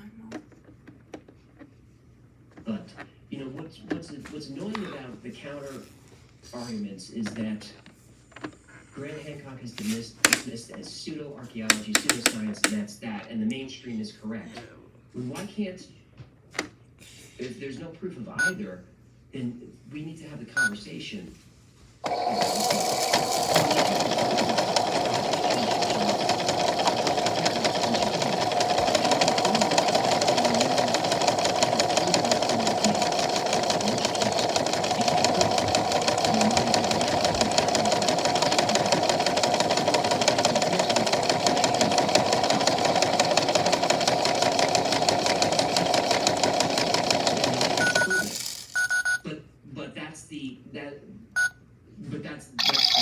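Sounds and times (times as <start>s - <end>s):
washing machine rattling: 11.7s - 12.8s, 22.0s - 48.8s
short beep: 18.4s - 18.6s, 47.9s - 49.2s, 51.4s - 51.6s.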